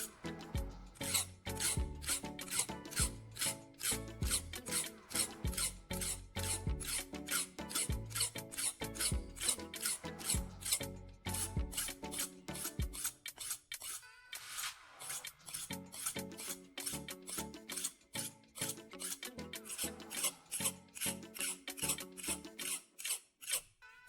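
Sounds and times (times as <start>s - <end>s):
background music with steady beat: 0.0s - 13.3s
knife sharpening strokes: 1.0s - 23.7s.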